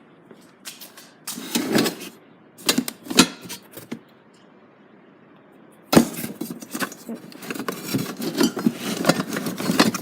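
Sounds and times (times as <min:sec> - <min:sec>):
rattling of hard parts: 0:06.0 - 0:10.0.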